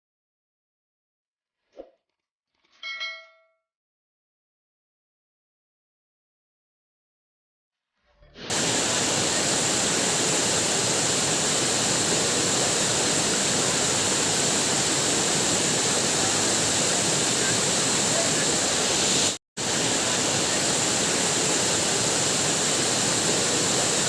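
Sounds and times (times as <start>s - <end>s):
waterfall pouring and splashing: 8.5s - 24.0s.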